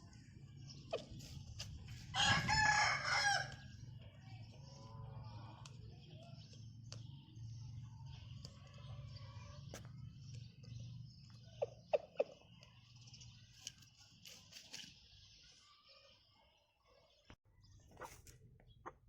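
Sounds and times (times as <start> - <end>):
faint bird chirping: 3.9 - 19.0.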